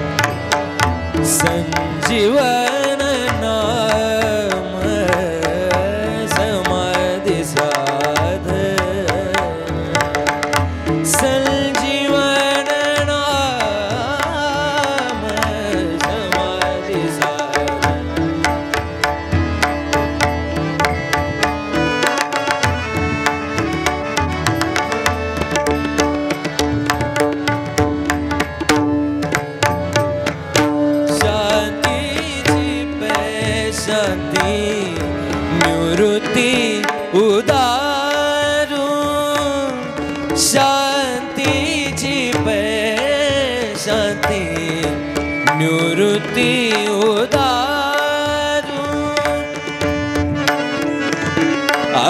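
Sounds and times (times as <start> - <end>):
steady accompanying tones: 0.0 - 39.0
man singing devotional song: 0.0 - 52.0
hand drum beating: 17.0 - 33.6.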